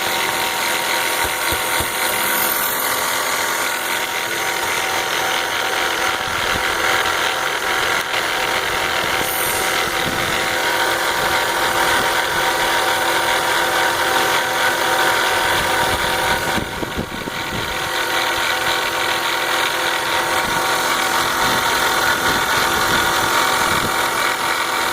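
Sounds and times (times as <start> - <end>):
car engine running: 0.0 - 12.7
fast mechanical rattle: 0.0 - 24.9.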